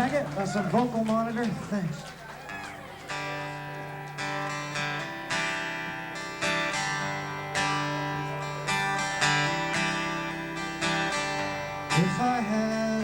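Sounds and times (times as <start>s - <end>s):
guitar strumming chords: 3.1s - 13.0s.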